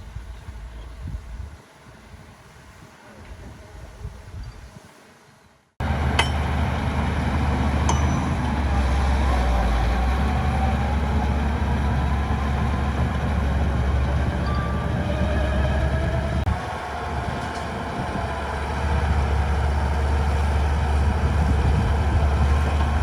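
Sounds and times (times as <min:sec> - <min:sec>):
heavy diesel engine rumbling: 0:05.8 - 0:23.0.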